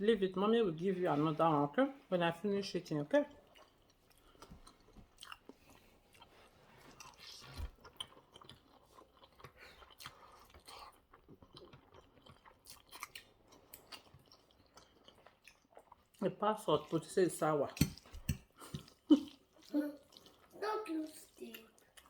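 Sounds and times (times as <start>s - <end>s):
chewing with wet mouth smacks: 3.4s - 16.2s, 17.8s - 22.0s.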